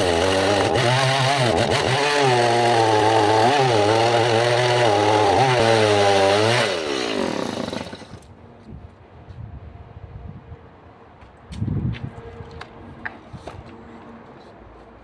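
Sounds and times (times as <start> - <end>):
chainsaw engine running: 0.0 - 8.2.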